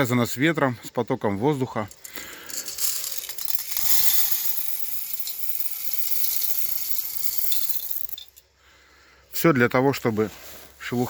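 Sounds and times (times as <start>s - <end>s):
coffee beans rattling: 1.8s - 8.4s.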